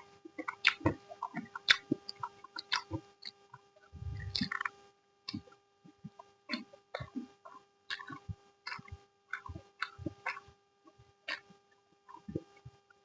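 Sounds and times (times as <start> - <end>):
person chewing with mouth smacks: 0.4 - 3.4, 4.0 - 4.7, 5.3 - 10.5, 11.3 - 11.5.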